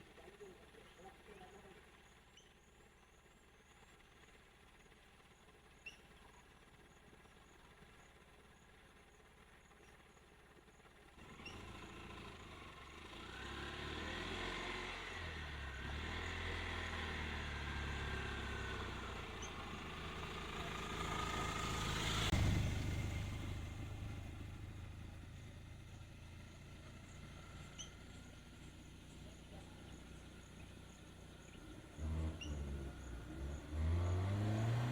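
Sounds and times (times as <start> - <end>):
vehicle engine passing by: 11.2 - 34.9.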